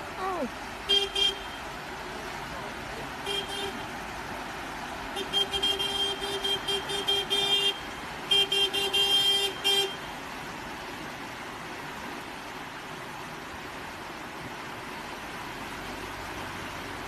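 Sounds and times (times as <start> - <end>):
car horn toots: 0.9 - 1.6, 3.2 - 3.8, 5.2 - 10.0.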